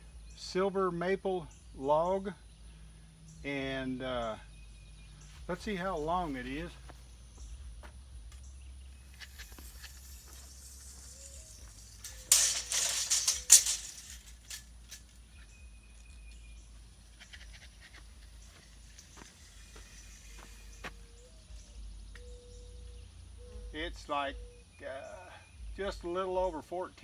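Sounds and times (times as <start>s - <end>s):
tape measure rattling and scraping: 9.0s - 15.5s
tape measure clicks: 9.1s - 15.3s.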